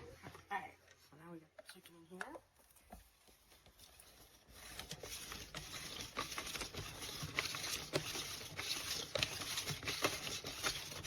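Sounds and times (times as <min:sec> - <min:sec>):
plastic shredder scraping and rattling: 0:04.3 - 0:11.0.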